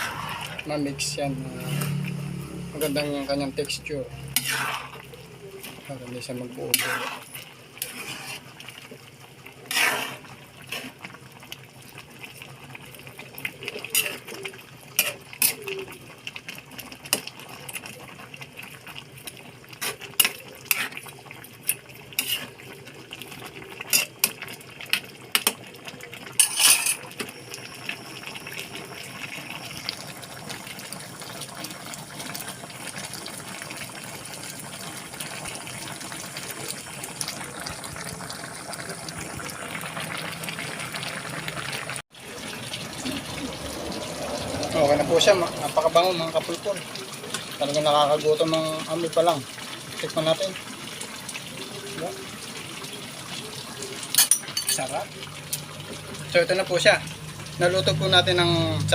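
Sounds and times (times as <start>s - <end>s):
pot simmering and bubbling: 0.0s - 58.9s
spoon clinking and scraping pot: 4.3s - 5.1s, 6.7s - 8.5s, 13.8s - 14.3s, 21.6s - 22.6s, 26.4s - 27.6s, 54.1s - 54.9s.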